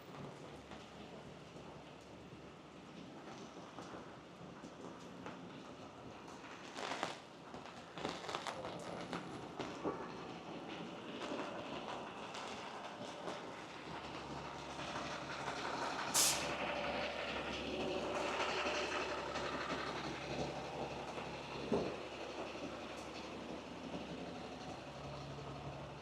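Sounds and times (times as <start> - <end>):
heavy vehicle rumbling past: 8.6 - 26.0
sharp short hiss: 16.2 - 16.5.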